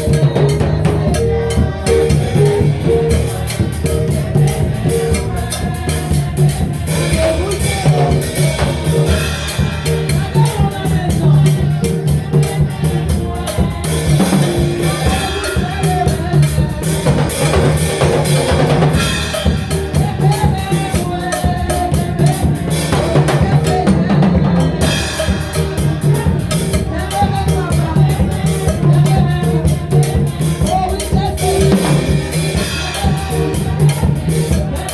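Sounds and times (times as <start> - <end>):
bass line: 0.0 - 34.9
drum kit beat: 0.0 - 34.9
gospel band music: 0.0 - 34.9
instrumental melody: 0.0 - 34.9.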